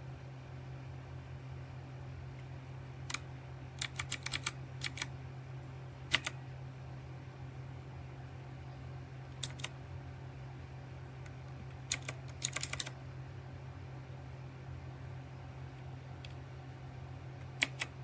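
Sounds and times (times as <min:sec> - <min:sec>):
steady low hum: 0:00.0 - 0:18.0
mechanical keyboard typing: 0:03.8 - 0:05.1, 0:06.1 - 0:06.4, 0:09.4 - 0:09.7, 0:11.7 - 0:13.0, 0:17.4 - 0:18.0.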